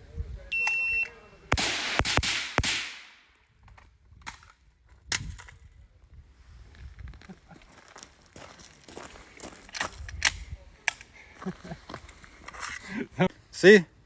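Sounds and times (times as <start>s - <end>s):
suppressed rifle shots with echo: 1.5s - 3.2s.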